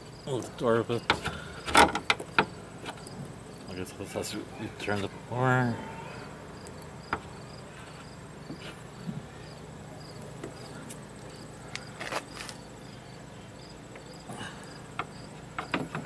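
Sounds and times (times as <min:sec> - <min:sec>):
crickets chirping: 0:00.0 - 0:16.0
clicks and knocks of metal strut: 0:01.0 - 0:03.0, 0:15.0 - 0:16.0.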